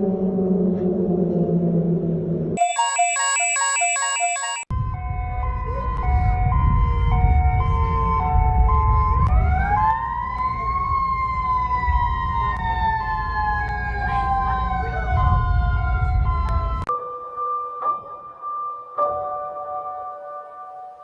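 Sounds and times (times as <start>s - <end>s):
rising and falling siren tone: 0.2s - 16.9s
electronic tones changing pitch: 2.6s - 4.7s.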